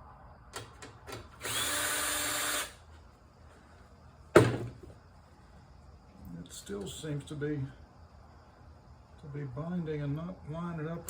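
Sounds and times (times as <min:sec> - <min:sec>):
power drill running: 0:01.4 - 0:02.8.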